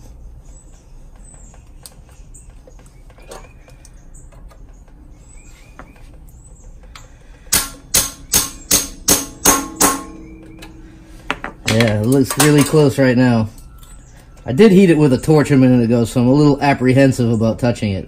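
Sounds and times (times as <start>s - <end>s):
faint clicks and chirps: 0.6s - 7.2s
hammer striking metal: 7.5s - 12.9s.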